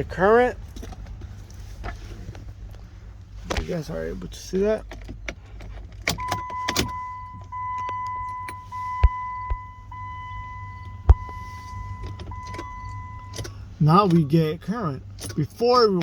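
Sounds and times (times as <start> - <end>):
circuit tester beeping: 6.2 - 13.4.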